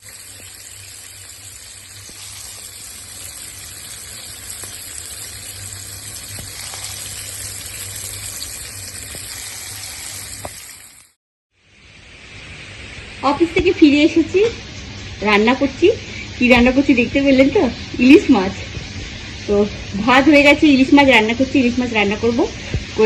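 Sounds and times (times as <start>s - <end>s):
fish sizzling in hot oil: 0.0s - 13.1s.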